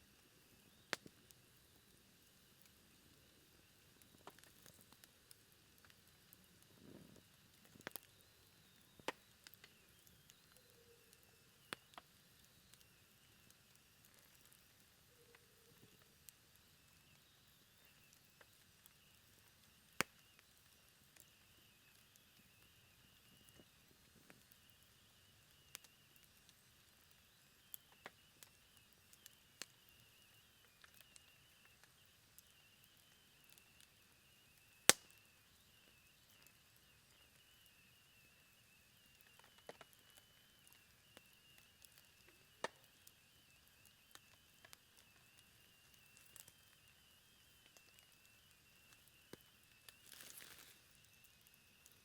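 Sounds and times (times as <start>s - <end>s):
campfire crackles and pops: 0.0s - 52.0s
campfire hissing: 0.0s - 52.0s
burning wood snapping: 0.6s - 1.9s, 2.5s - 24.8s, 34.9s - 35.2s, 39.0s - 46.9s, 47.6s - 52.0s
faint thin whistle: 5.9s - 52.0s.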